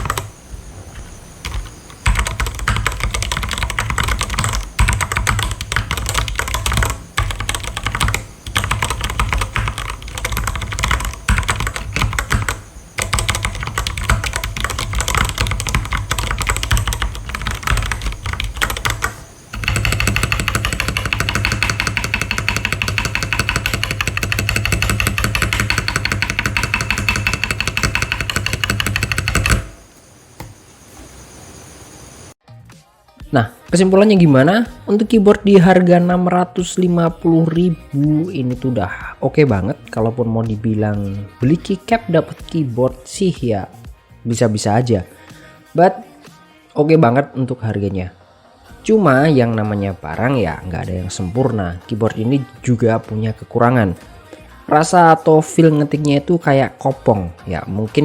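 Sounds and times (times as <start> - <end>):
mechanical keyboard typing: 0.0 - 0.4, 1.0 - 29.9.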